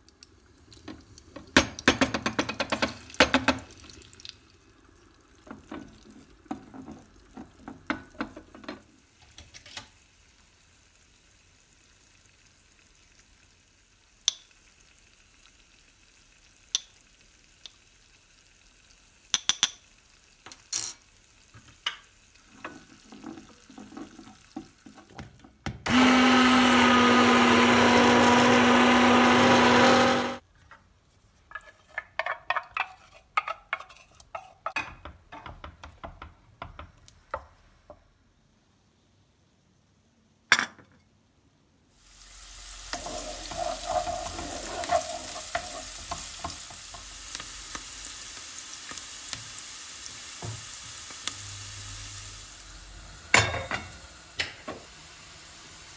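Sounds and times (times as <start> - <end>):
kitchen clicks and knocks: 1.4 - 3.7, 31.5 - 37.5
electric blender running: 25.9 - 30.4.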